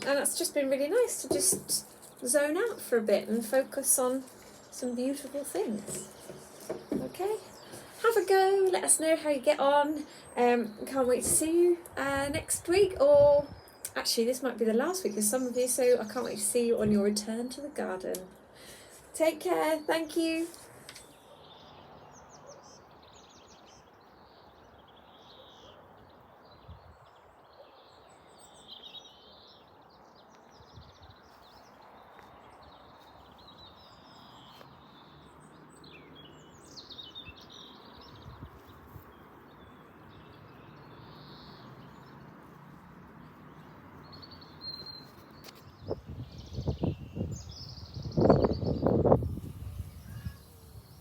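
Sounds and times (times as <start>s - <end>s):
small birds chirping: 0.0s - 51.0s.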